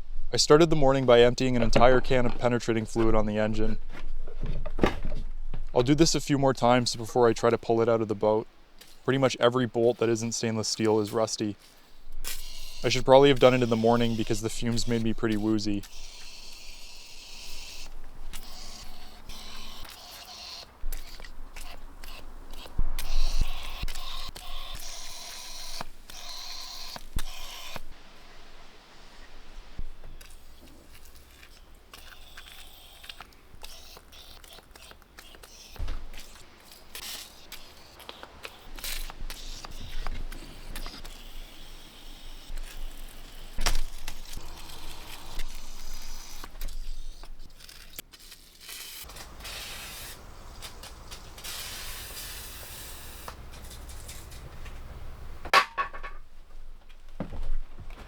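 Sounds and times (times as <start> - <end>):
steady hiss: 5.9 - 32.3, 48.5 - 55.5.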